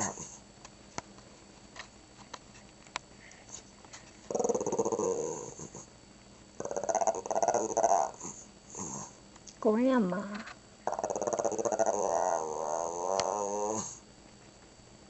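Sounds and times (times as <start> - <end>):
dog growly vocalization: 0.0 - 0.4, 4.3 - 5.9, 6.6 - 9.2, 10.8 - 14.0.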